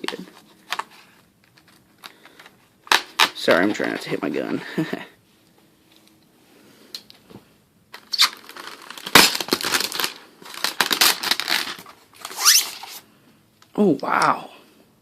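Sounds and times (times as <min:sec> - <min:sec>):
packing material crinkling: 0:07.9 - 0:13.0.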